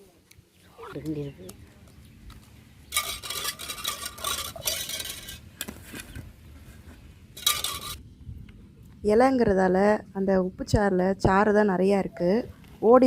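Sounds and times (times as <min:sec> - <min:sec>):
metal utensil scraping a pot: 0:02.9 - 0:05.7, 0:07.4 - 0:08.0.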